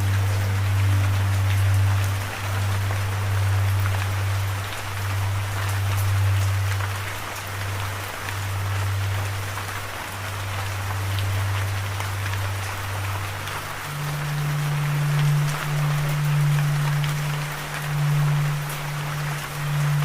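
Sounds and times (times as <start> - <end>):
steady rain: 0.0 - 20.0
low drone note: 7.8 - 20.0.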